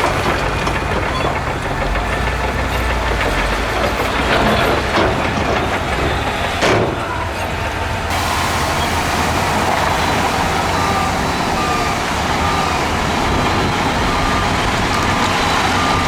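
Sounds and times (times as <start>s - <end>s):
diesel engine running: 8.1s - 16.0s
reversing alarm beeping: 8.1s - 16.0s.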